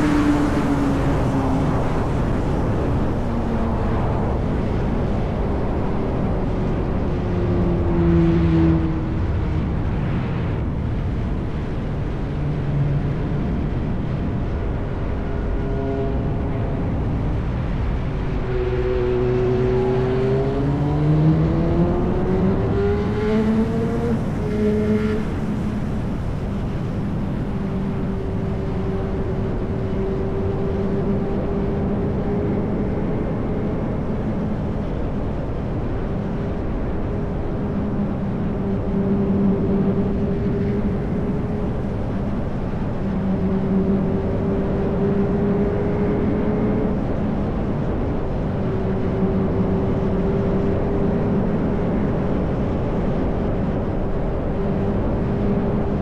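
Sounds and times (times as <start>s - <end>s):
motorcycle engine revving: 18.6s - 34.1s.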